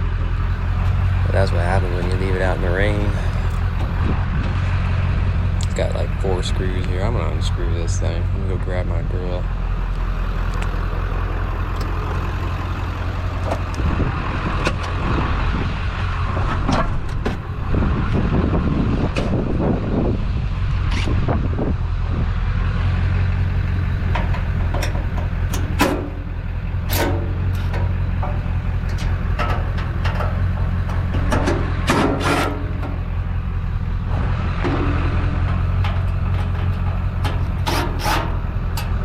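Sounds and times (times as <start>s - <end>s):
truck engine idling: 0.0s - 39.0s
clicks and knocks: 26.9s - 33.0s, 34.6s - 39.0s.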